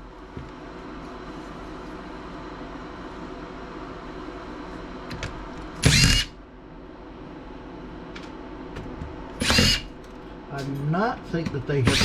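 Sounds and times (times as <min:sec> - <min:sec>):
steady background hum: 0:00.0 - 0:12.0
electric screwdriver whirring: 0:05.8 - 0:06.3, 0:09.4 - 0:09.9.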